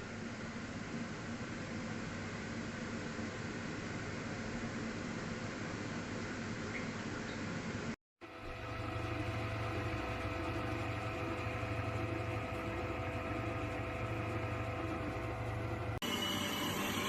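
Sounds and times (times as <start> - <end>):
stand mixer motor humming and whining: 8.2 - 17.0.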